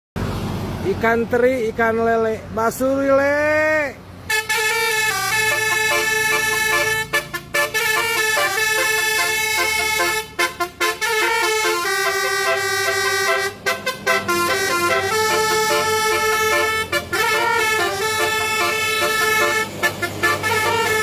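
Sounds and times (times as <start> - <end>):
multi-tone bus horn tune: 4.3 - 21.0.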